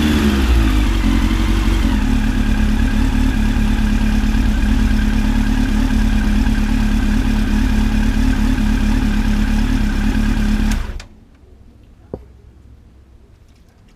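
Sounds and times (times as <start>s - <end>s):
motorcycle engine idling: 0.0s - 11.0s.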